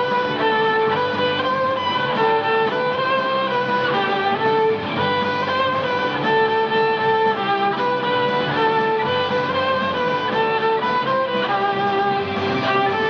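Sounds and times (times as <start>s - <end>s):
lower accompaniment: 0.0s - 13.0s
violin melody: 0.0s - 13.0s.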